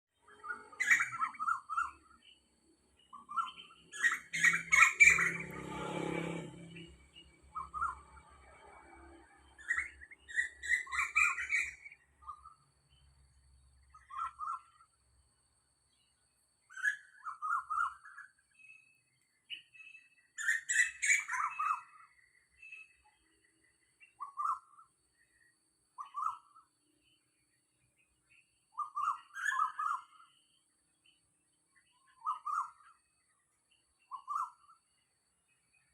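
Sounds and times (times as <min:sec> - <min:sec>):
bird calling shrill notes: 0:00.2 - 0:02.2, 0:03.1 - 0:08.2, 0:09.6 - 0:12.5, 0:16.7 - 0:18.8, 0:19.5 - 0:23.1, 0:24.1 - 0:24.9, 0:26.0 - 0:26.6, 0:28.7 - 0:30.4, 0:32.1 - 0:33.0, 0:34.1 - 0:34.8.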